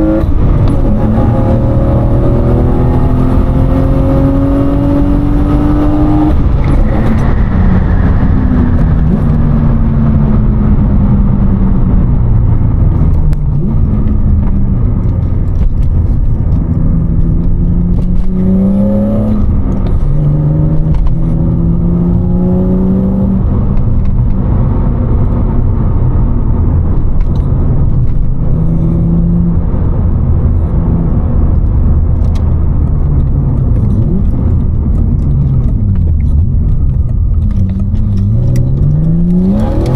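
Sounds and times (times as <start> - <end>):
car engine accelerating from inside: 0.0 - 39.9.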